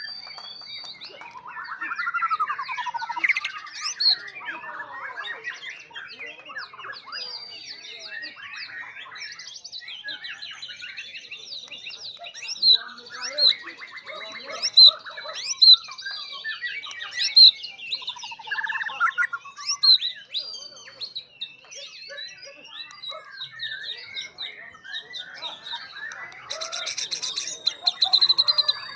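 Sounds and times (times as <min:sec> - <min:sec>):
sharp bird whistles: 0:00.0 - 0:04.3
birds singing: 0:00.0 - 0:28.9.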